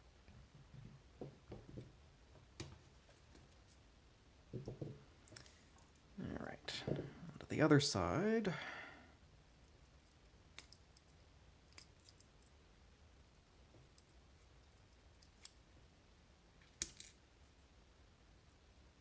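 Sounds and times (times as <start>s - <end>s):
metal lock parts clicking: 16.8s - 17.2s.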